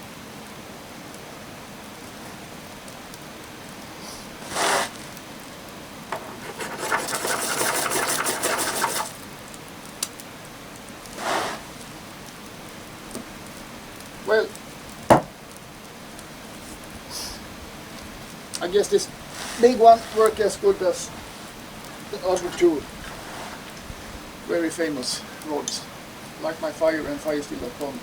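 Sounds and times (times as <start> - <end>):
steady hiss: 0.0 - 28.0
striker scraping ferrocerium rod: 6.1 - 9.2.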